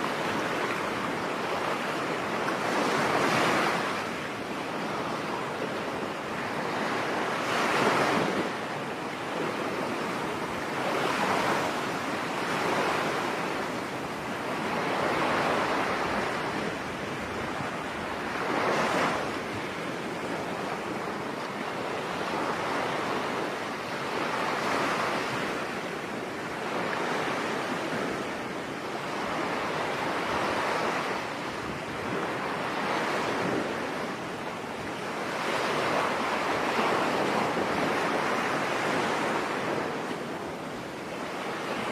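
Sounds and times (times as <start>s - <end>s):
ocean waves washing onto beach: 0.0s - 41.9s.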